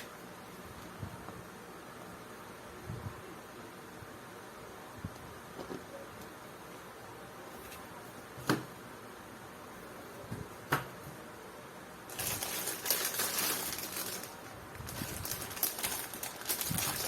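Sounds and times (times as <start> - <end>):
plastic crinkling: 12.1 - 17.0.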